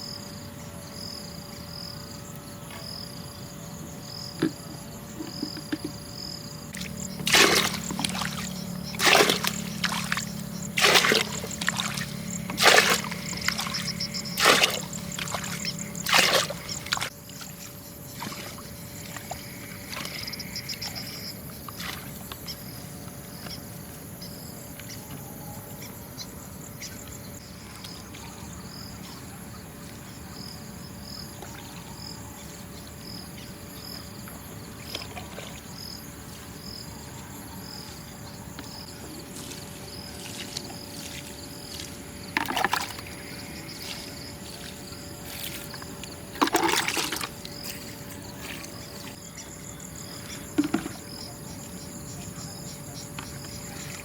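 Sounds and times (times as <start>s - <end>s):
insects chirping: 0.0s - 54.0s
water splashing in strokes: 6.7s - 21.0s, 38.9s - 49.2s.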